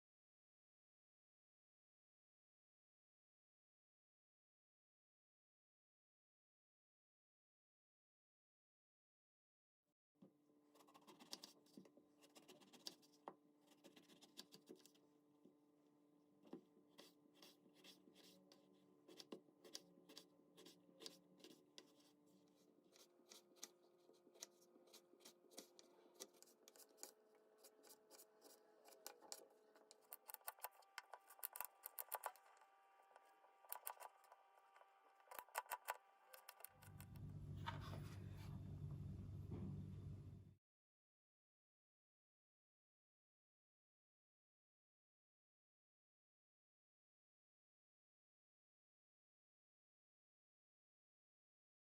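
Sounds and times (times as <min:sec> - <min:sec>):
low hum: 0:36.8 - 0:40.6.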